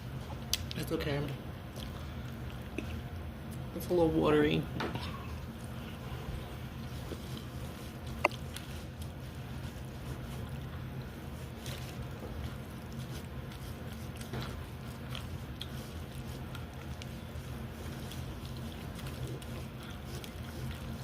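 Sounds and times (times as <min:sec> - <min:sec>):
steady low hum: 0:00.0 - 0:21.0
person chewing: 0:01.7 - 0:03.7, 0:06.7 - 0:21.0.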